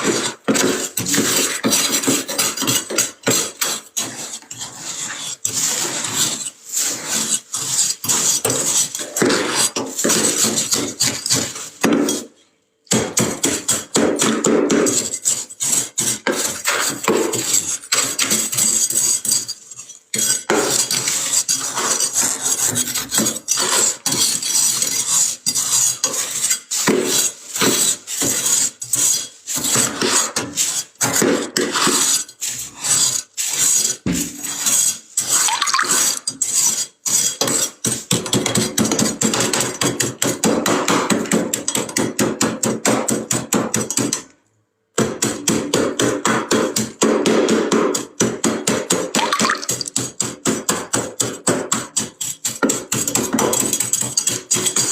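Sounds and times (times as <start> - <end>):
scraping freezer frost: 0.0 - 12.4, 13.0 - 40.4.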